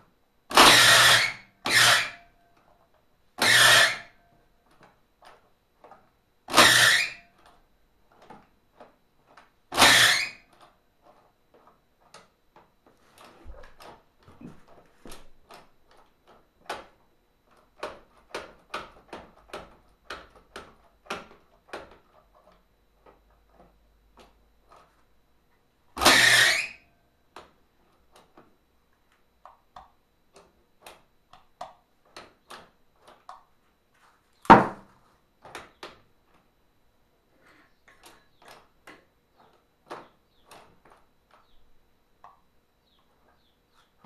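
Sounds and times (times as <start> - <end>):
sharp loud knock: 34.5 - 34.8.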